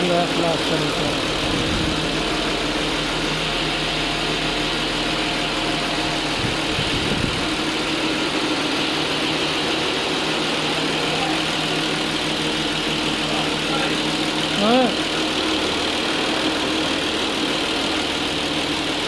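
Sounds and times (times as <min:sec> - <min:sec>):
car engine idling: 0:00.0 - 0:19.0
low rumble: 0:00.5 - 0:09.6.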